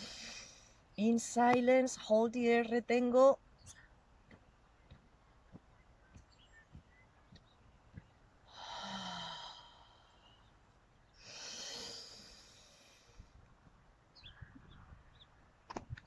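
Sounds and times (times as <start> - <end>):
person breathing out: 0.0 - 0.8, 8.5 - 10.3, 11.2 - 13.2.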